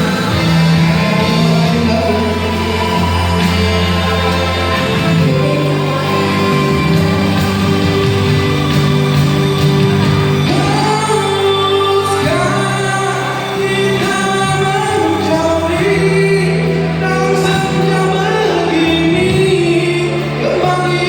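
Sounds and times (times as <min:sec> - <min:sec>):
woman singing slow song: 0:00.0 - 0:08.6
recorded backing music: 0:00.0 - 0:21.0.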